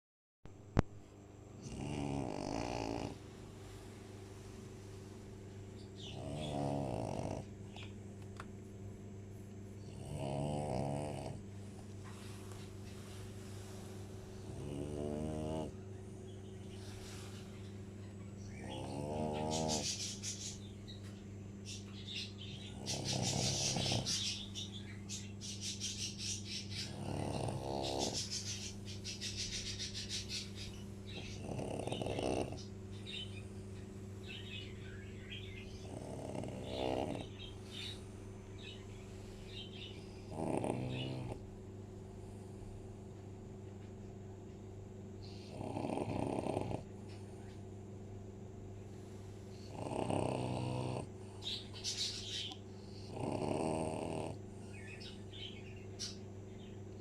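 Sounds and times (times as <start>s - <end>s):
steady low hum: 0.5s - 57.0s
dog snoring wheezily: 1.6s - 3.2s, 6.0s - 7.5s, 9.9s - 11.4s, 14.4s - 15.8s, 18.6s - 20.2s, 22.6s - 24.4s, 26.9s - 28.4s, 31.1s - 32.7s, 35.8s - 37.4s, 40.3s - 41.4s, 45.4s - 46.8s, 49.7s - 51.1s, 53.0s - 54.4s.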